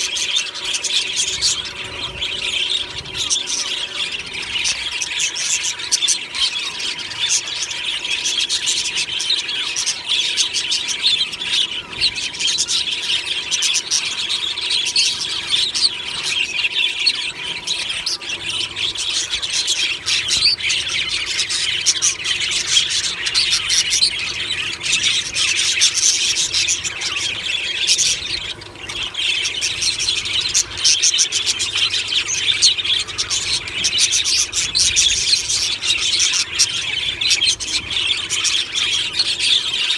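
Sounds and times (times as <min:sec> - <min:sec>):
budgerigars chattering and chirping: 0:00.0 - 0:39.9.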